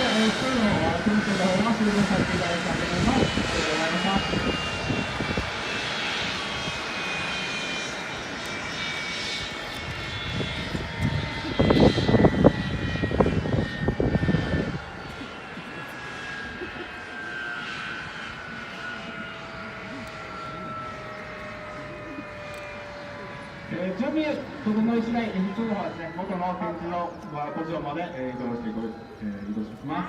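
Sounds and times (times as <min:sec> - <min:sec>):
gusty low rumble: 0:00.0 - 0:07.3, 0:09.2 - 0:15.6
jet engine whine winding down: 0:00.0 - 0:30.0.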